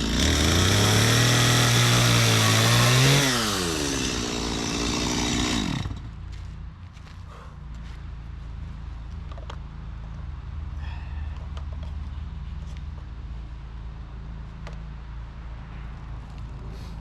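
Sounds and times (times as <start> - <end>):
chainsaw idling: 0.0 - 6.4.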